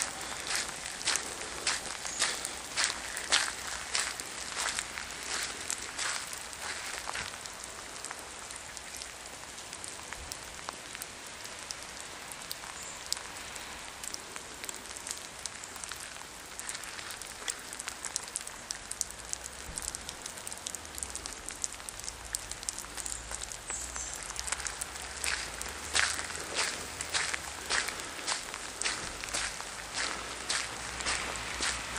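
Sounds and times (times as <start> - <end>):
steady rain falling: 0.0 - 31.9
drips ticking and tapping: 14.0 - 31.8.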